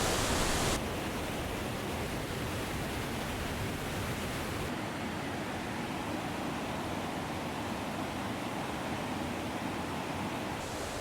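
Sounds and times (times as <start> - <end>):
river rushing: 0.0 - 0.9, 10.6 - 11.0.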